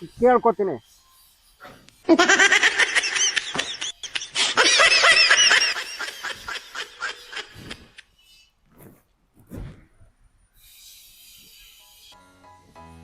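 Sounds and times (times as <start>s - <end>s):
man laughing: 2.1s - 8.0s.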